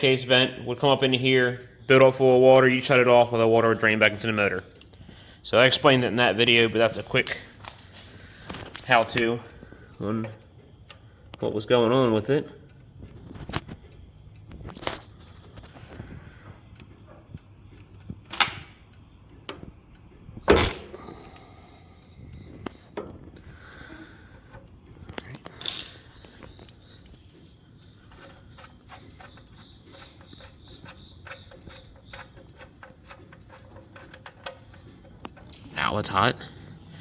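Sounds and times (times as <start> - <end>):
metal hand tools clanking: 24.5 - 27.1.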